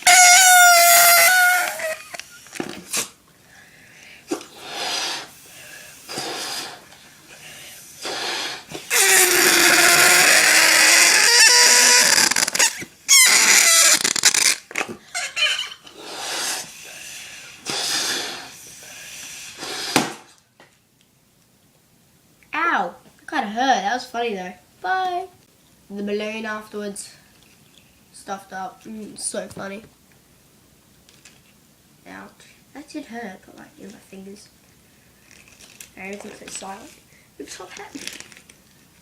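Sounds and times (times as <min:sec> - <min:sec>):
balloon squealing as air escapes: 0:00.0 - 0:03.1, 0:08.0 - 0:16.7.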